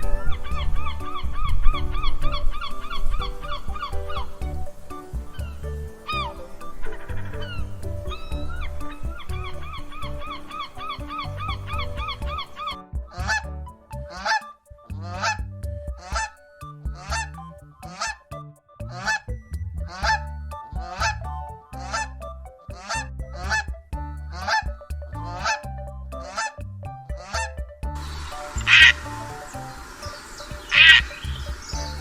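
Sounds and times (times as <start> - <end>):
rapid trilling bird call: 0.0 - 13.3, 27.2 - 32.0.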